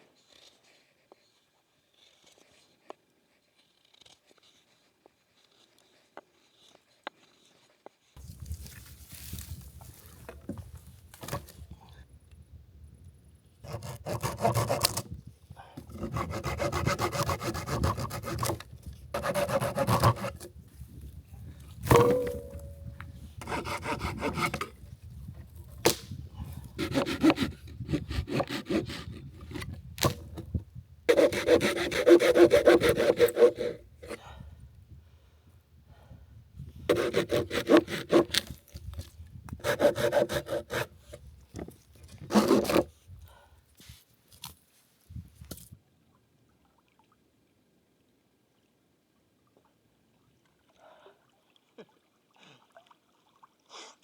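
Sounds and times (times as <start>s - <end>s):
hand saw cutting wood: 13.6s - 15.2s, 15.8s - 20.6s, 21.8s - 24.9s, 25.8s - 34.2s, 36.9s - 38.8s, 39.6s - 43.0s.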